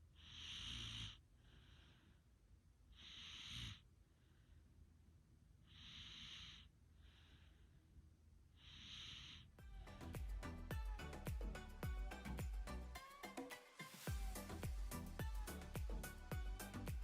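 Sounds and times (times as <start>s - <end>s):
soft breath: 0.1s - 5.0s, 5.6s - 9.6s
person snoring faintly: 0.2s - 2.0s.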